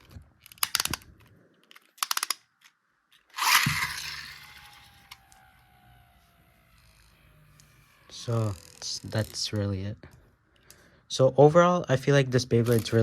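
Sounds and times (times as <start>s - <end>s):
ratcheting plastic clicks: 0.0s - 5.5s, 12.6s - 13.0s.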